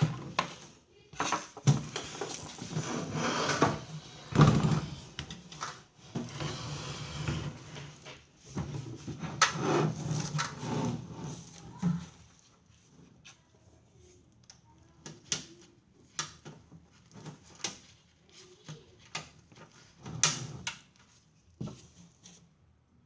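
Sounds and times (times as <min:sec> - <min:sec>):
objects knocking and scraping: 0:00.0 - 0:12.4.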